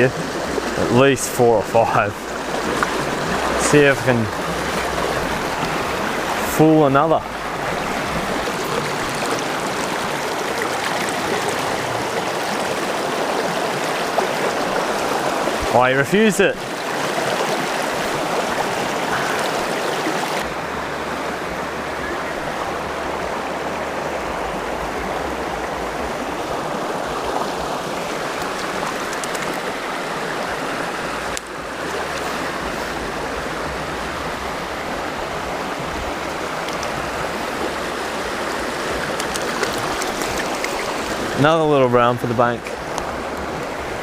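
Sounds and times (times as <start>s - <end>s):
stream water rushing: 0.0s - 44.0s.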